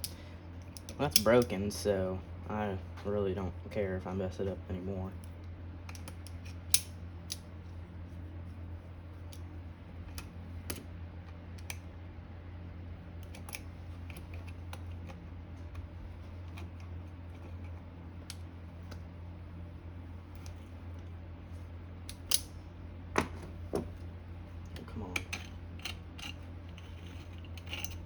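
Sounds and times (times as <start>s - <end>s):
steady low hum: 0.0s - 28.0s
hand tools clicking and scraping: 24.8s - 28.0s.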